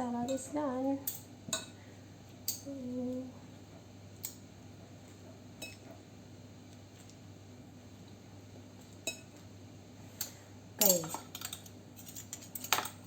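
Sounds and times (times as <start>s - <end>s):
low room hum: 0.0s - 13.0s
utensils clinking against dishes: 10.2s - 13.0s.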